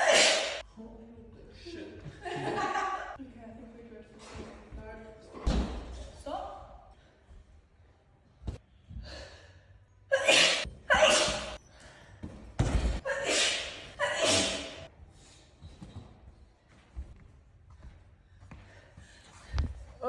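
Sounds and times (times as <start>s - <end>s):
woman sneezing: 0.0s - 0.6s, 10.1s - 11.6s, 13.1s - 14.9s.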